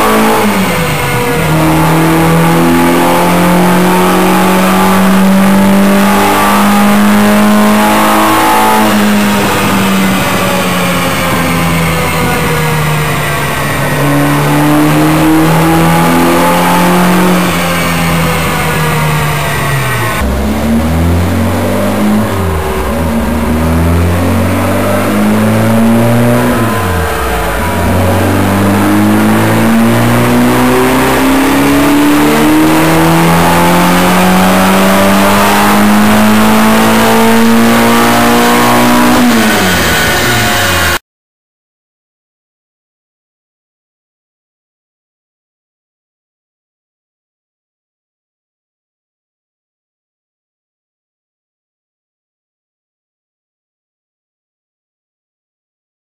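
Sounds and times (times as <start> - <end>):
car engine revving high: 0.0 - 41.0.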